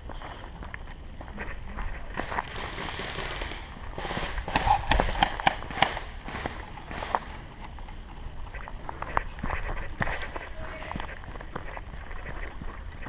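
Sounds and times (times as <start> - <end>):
footsteps on outdoor ground: 0.0 - 13.0
sharp cracks: 2.0 - 10.5.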